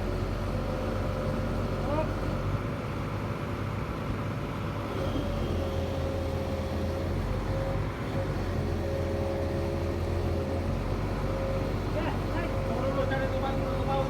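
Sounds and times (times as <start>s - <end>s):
engine droning: 4.8s - 14.0s.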